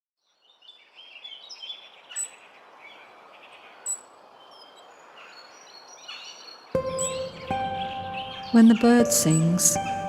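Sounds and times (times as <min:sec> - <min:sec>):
birds singing and chirping: 0:00.2 - 0:10.0
sharp high bird chirps: 0:06.1 - 0:10.0.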